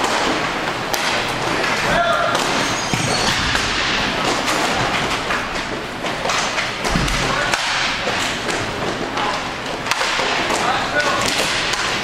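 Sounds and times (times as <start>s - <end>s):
puck and sticks hitting boards: 0.0s - 12.0s
steady background noise: 0.0s - 12.0s.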